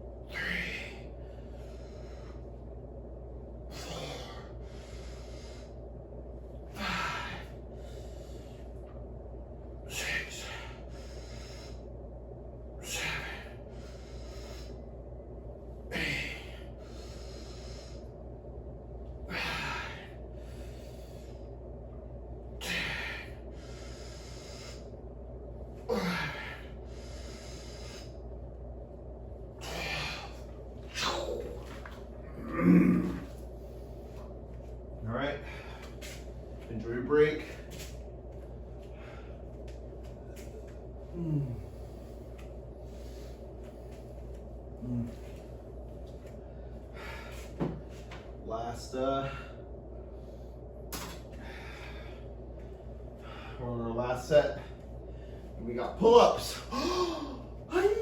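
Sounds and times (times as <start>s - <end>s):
steady low hum: 0.0s - 58.0s
man breathing hard: 0.3s - 2.8s, 3.6s - 6.0s, 6.6s - 9.0s, 9.7s - 12.1s, 12.7s - 15.1s, 15.7s - 18.3s, 19.2s - 21.7s, 22.4s - 28.4s, 29.3s - 34.3s, 35.1s - 36.6s, 38.7s - 45.6s, 46.2s - 48.2s, 49.1s - 53.6s, 54.5s - 55.6s, 56.4s - 58.0s.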